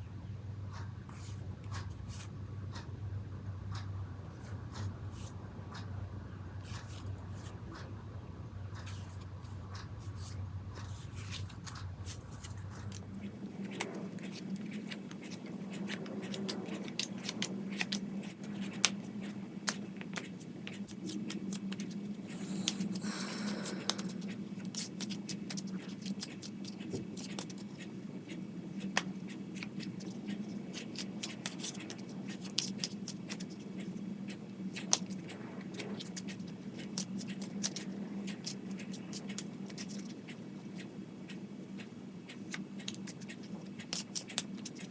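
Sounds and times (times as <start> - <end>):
cards shuffling and clicking: 19.7 - 27.6.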